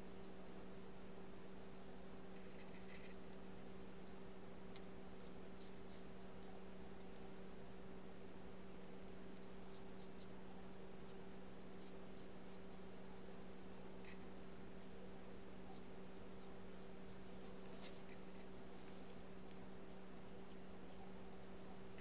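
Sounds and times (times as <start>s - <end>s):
paintbrush strokes on paper: 0.0s - 4.3s, 11.0s - 22.0s
steady low hum: 0.0s - 22.0s.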